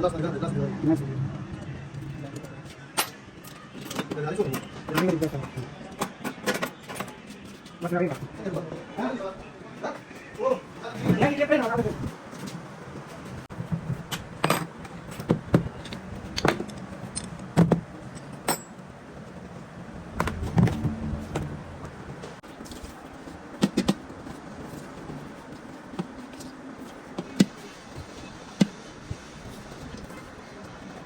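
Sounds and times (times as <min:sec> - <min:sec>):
low workshop hum: 0:07.0 - 0:23.1.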